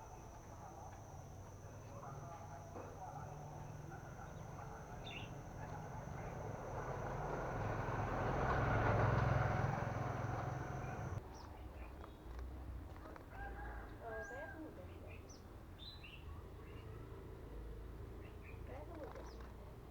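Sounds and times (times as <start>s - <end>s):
bird chirps: 0.0s - 11.2s
motor vehicle passing: 0.0s - 11.2s.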